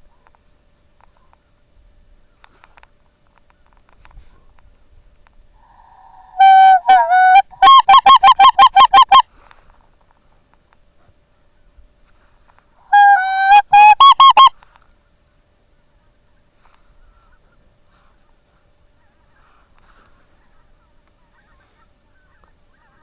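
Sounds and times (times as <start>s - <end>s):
goose honking: 5.6s - 9.2s, 12.9s - 14.5s.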